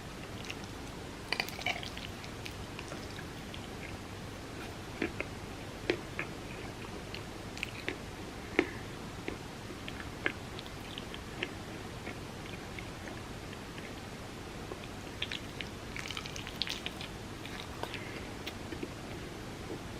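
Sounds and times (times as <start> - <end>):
wet mouth chewing clicks: 14.7 - 18.9.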